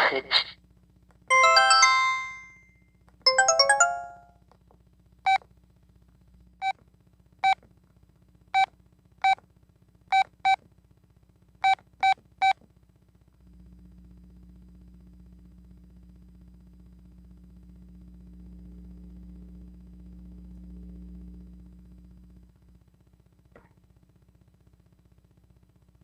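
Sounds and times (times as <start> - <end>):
phone message alert: 1.3 - 2.6, 3.3 - 4.2.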